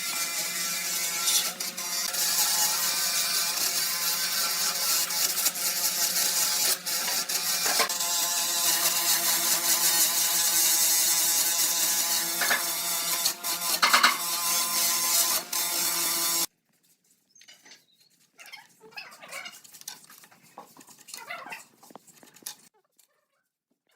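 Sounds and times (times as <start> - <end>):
power tool running on wood: 0.0 - 16.5.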